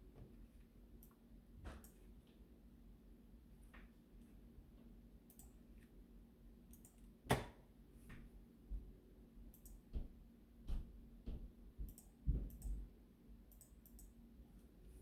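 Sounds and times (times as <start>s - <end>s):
faint steady hum: 0.0s - 15.0s
light clicks and taps: 10.7s - 12.8s.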